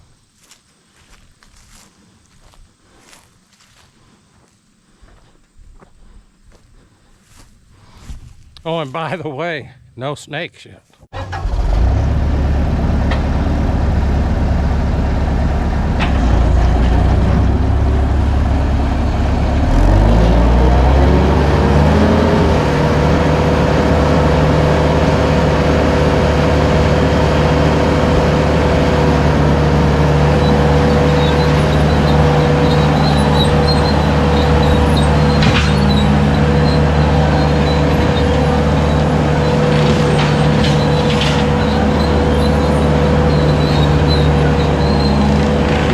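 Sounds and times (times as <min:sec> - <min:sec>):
diesel engine running under load: 0:11.1 - 0:45.9.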